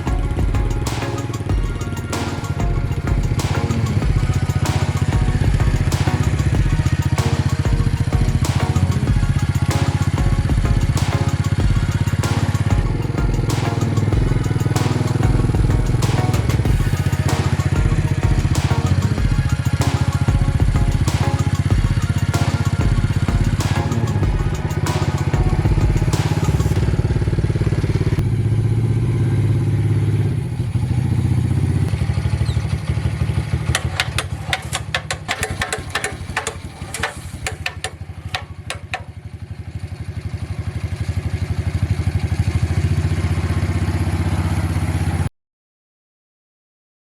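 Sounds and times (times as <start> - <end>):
small engine running: 13.7 - 45.3
quick clicks and knocks: 33.7 - 39.1.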